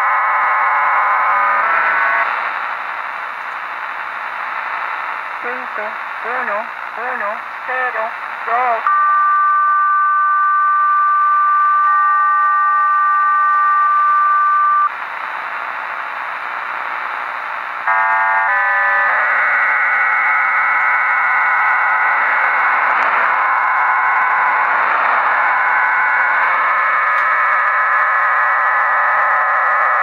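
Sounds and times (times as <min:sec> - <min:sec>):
shortwave static hiss: 0:00.0 - 0:30.0
two-tone carrier signal: 0:05.4 - 0:14.9, 0:17.9 - 0:20.1.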